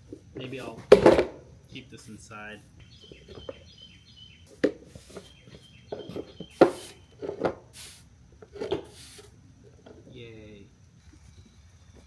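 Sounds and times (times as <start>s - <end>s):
objects knocking and clunking: 0.0s - 1.6s, 4.5s - 7.7s, 8.4s - 9.0s
short hiss: 6.5s - 8.2s, 8.8s - 9.4s.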